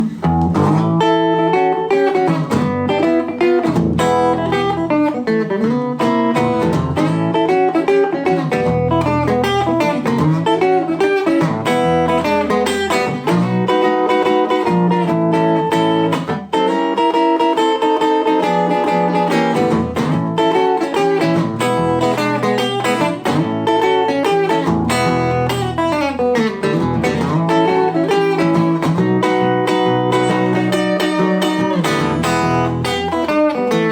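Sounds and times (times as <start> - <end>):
archtop guitar playing: 0.0 - 33.9.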